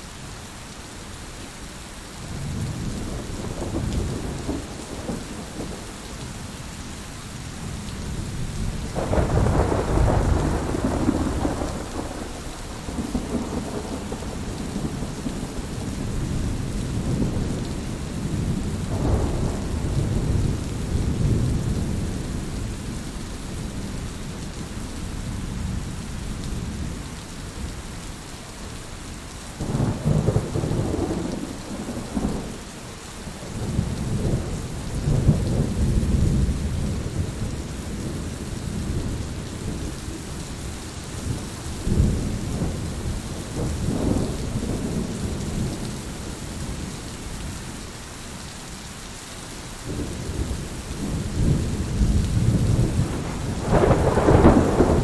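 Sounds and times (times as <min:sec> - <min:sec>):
heavy rain hissing: 0:00.0 - 0:55.0
thunder rumbling: 0:02.3 - 0:05.9, 0:08.0 - 0:24.0, 0:29.6 - 0:32.7, 0:33.3 - 0:40.0, 0:41.2 - 0:46.9, 0:49.9 - 0:55.0.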